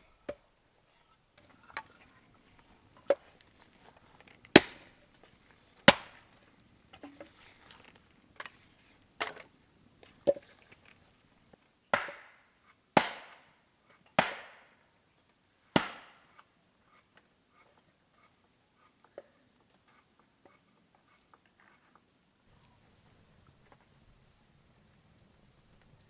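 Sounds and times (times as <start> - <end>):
axe chopping wood: 4.5 - 5.0, 5.8 - 6.3, 11.9 - 12.4, 13.0 - 13.5, 14.2 - 14.7, 15.8 - 16.2.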